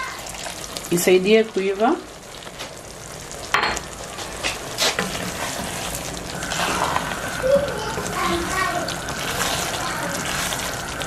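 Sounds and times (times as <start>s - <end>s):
stew sizzling in a pot: 0.0s - 11.0s.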